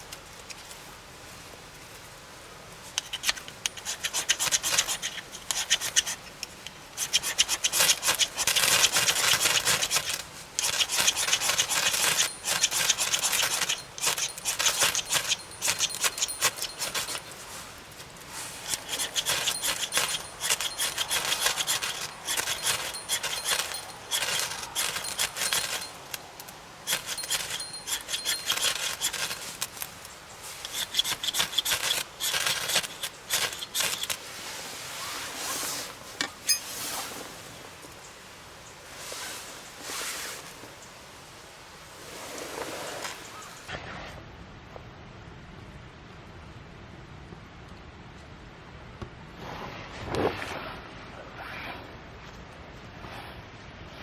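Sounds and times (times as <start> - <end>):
hand saw cutting wood: 3.0 - 17.4, 18.4 - 34.2.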